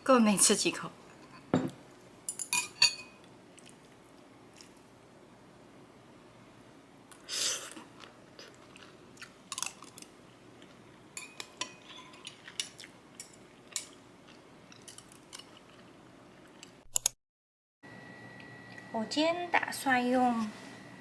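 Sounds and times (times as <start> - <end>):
chewing: 7.1 - 10.8, 11.8 - 16.7.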